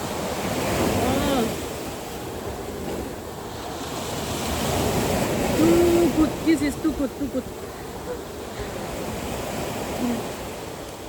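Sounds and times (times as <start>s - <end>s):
surf breaking on beach: 0.0s - 11.0s.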